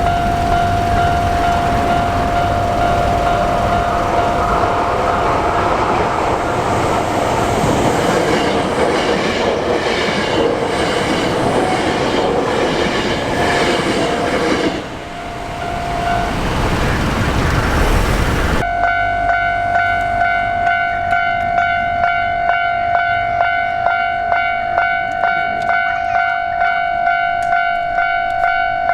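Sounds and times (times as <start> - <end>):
train wheels clattering over rail joints: 0.0 - 18.6
crossing warning bell ringing: 0.0 - 28.9.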